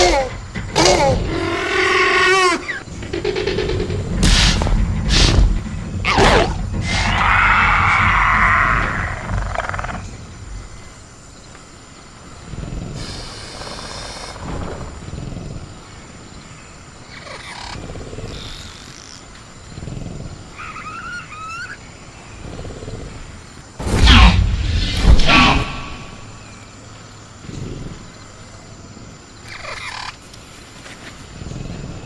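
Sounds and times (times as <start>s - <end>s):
jungle ambience: 0.0s - 32.0s
dinosaur growls and roar: 0.7s - 10.2s
animal calls: 17.1s - 19.2s, 20.5s - 21.9s, 29.4s - 30.2s.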